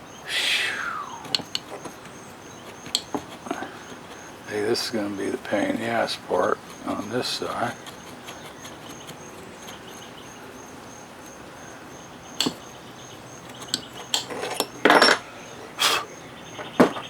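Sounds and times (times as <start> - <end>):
crickets chirping: 0.0 - 17.0
metal tools clinking and scraping: 13.4 - 17.0.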